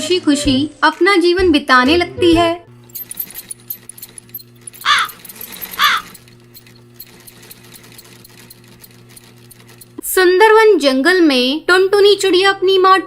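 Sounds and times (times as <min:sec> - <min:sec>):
crow cawing: 0:04.8 - 0:06.2.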